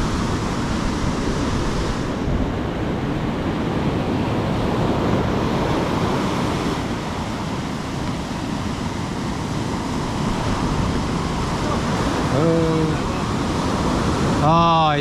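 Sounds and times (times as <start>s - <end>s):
ocean waves rushing: 0.0s - 15.0s
wind buffeting microphone: 0.0s - 15.0s.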